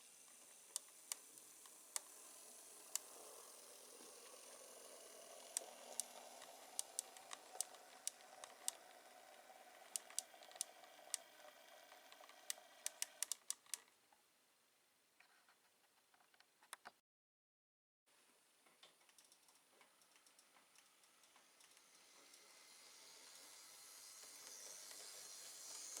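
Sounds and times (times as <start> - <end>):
model locomotive motor whirring: 0.0 - 13.8, 19.9 - 26.0
wheels clicking on track: 0.0 - 13.8, 19.2 - 26.0.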